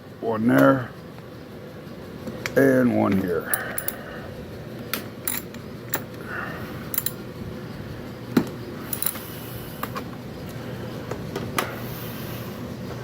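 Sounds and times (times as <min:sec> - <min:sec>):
metal tools clinking on bolts: 0:03.4 - 0:04.0, 0:05.2 - 0:06.2, 0:06.9 - 0:07.3, 0:08.9 - 0:09.2.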